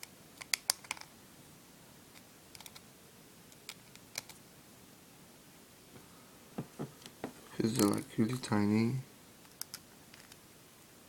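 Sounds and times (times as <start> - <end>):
soft knock: 6.6 - 7.4.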